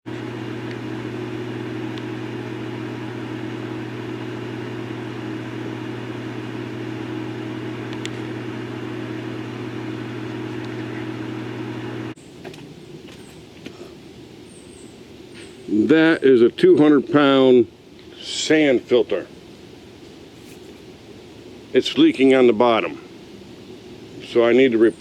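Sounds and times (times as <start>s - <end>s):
pool pump motor humming: 0.0s - 12.2s.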